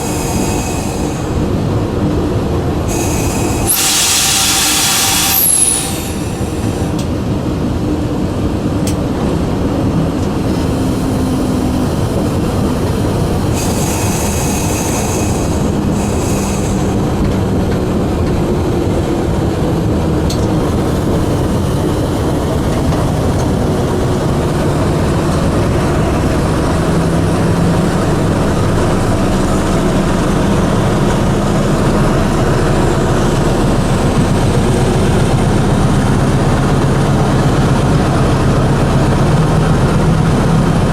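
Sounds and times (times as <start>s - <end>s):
hiss: 0.0s - 1.6s, 2.9s - 7.0s, 13.5s - 17.2s
locomotive engine rumble: 0.0s - 40.9s
rail noise: 0.0s - 40.9s.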